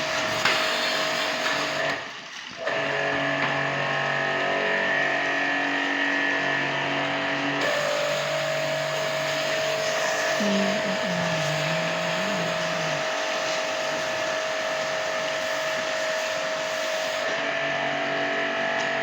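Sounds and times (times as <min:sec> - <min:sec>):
pump motor whine: 0:00.0 - 0:19.0.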